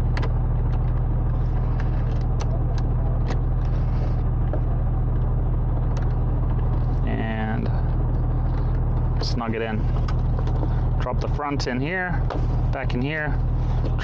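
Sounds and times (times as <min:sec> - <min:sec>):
gear shifter clicks and taps: 0:00.0 - 0:03.8, 0:04.4 - 0:06.8, 0:08.1 - 0:11.3
car engine idling: 0:00.0 - 0:14.0.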